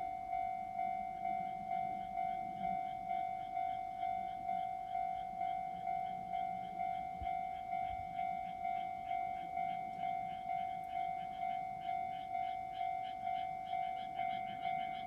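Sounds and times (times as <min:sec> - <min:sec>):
electronic crossing bell ringing: 0:00.0 - 0:15.0.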